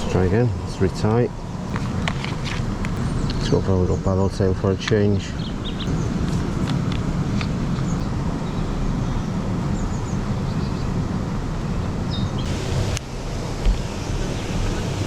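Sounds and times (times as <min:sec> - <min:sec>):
wind buffeting microphone: 0:05.3 - 0:15.0
rushing water: 0:12.5 - 0:15.0.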